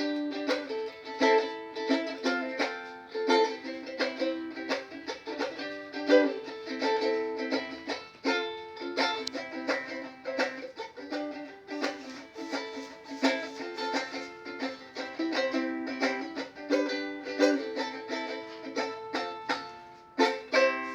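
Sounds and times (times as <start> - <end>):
ukulele strumming chords: 0.0 - 20.9.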